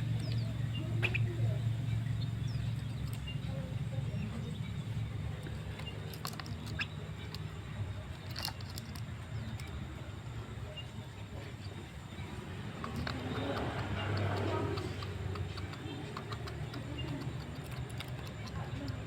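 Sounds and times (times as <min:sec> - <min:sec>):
bird chirps: 0:00.0 - 0:19.0
steady low hum: 0:00.0 - 0:19.0
sharp clicks: 0:12.6 - 0:19.0.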